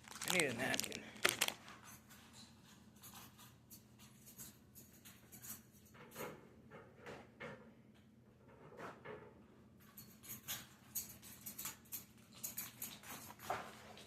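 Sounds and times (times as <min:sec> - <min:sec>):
rustling: 0:00.0 - 0:04.2.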